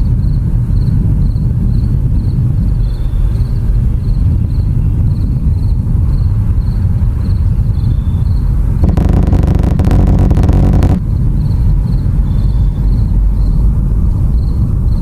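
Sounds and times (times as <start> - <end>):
engine-like drone: 8.8 - 11.0
heavy low rumble: 8.8 - 11.0.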